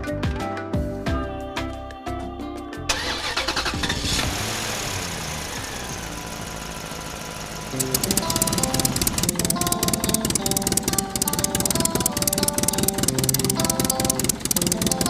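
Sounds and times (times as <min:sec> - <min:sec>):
music: 0:00.0 - 0:04.3, 0:07.7 - 0:15.0
engine starting and running: 0:02.9 - 0:15.0
fast ticking rhythm: 0:07.7 - 0:15.0.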